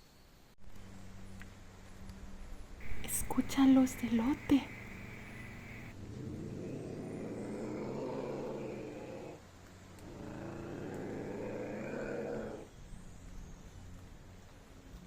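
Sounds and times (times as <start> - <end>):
ocelot calling: 2.8 - 5.9.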